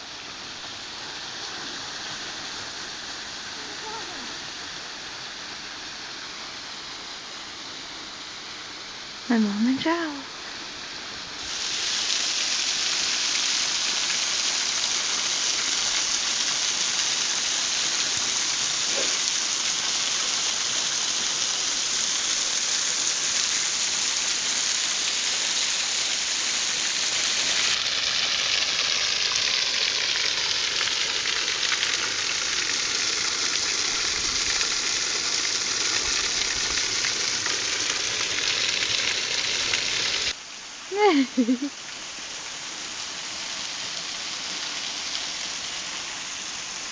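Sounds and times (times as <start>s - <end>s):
waterfall rushing: 0.0s - 46.9s.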